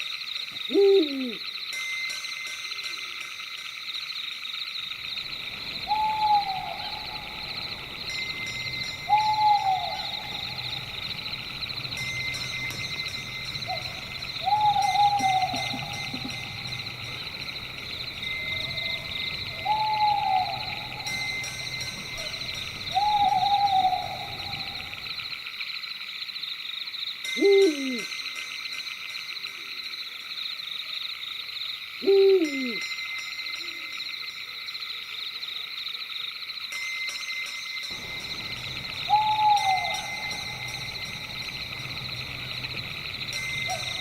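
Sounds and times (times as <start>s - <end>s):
night insects chorus: 0.0s - 44.0s
owl hooting: 0.6s - 1.4s, 5.3s - 12.4s, 13.0s - 25.2s, 27.4s - 28.1s, 32.0s - 32.8s, 38.0s - 44.0s.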